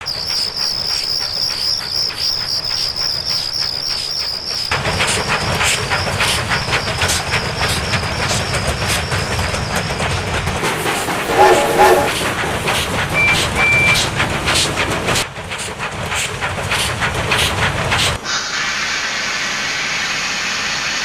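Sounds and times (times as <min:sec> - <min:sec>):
crickets chirping: 0:00.0 - 0:04.7
train rumbling: 0:00.0 - 0:21.0.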